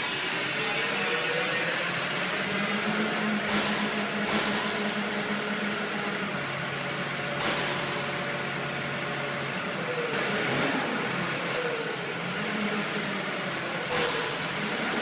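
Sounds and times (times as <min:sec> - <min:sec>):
heavy machinery engine humming: 0:00.0 - 0:15.0
short burst of hiss: 0:07.4 - 0:08.3.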